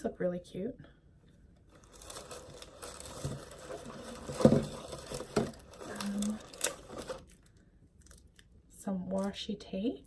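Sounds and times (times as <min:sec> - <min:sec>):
packaging rustling and crinkling: 0:01.7 - 0:08.3.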